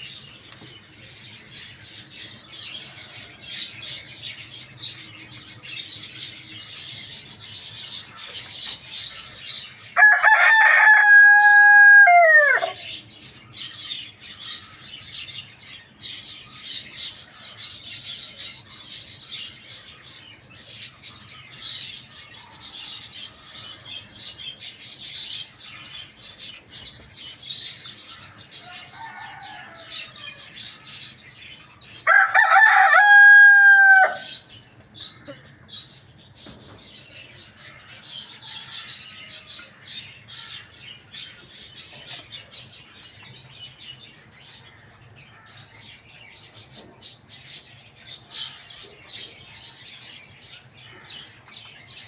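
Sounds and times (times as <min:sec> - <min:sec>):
small birds chirping: 0:00.0 - 0:52.0
rooster crowing: 0:10.0 - 0:12.9, 0:28.6 - 0:30.6, 0:32.0 - 0:34.4.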